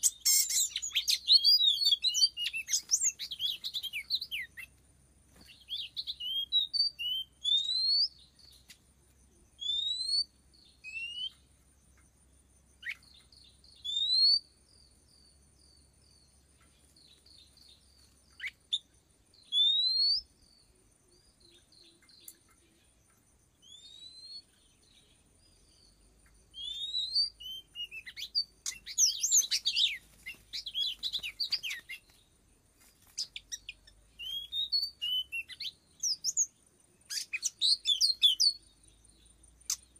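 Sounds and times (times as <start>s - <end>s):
bird whistles and chirps: 0.0s - 4.7s, 5.4s - 8.8s, 9.6s - 11.5s, 12.8s - 14.5s, 18.3s - 20.4s, 23.6s - 24.6s, 26.5s - 32.2s, 33.2s - 36.5s, 37.1s - 38.7s.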